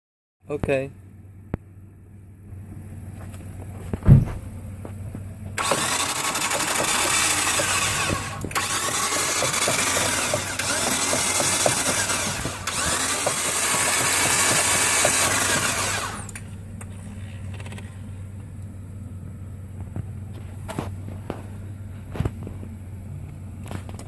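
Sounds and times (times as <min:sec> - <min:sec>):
single thump: 0:03.8 - 0:04.6
starter cranking engine: 0:05.5 - 0:18.2.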